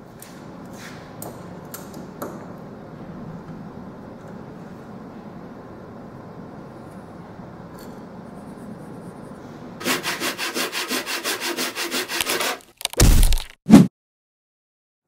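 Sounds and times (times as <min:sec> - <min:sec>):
rubbing on wood: 0:09.8 - 0:12.6.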